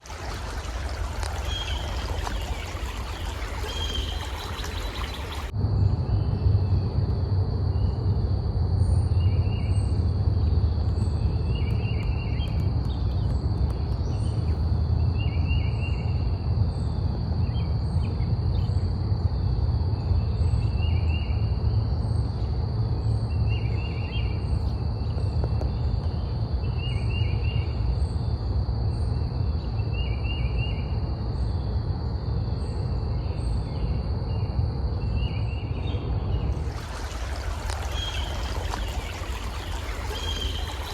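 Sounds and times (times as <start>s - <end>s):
running water rushing: 0.0s - 5.5s, 36.5s - 40.9s
constant low rumble: 0.3s - 40.9s.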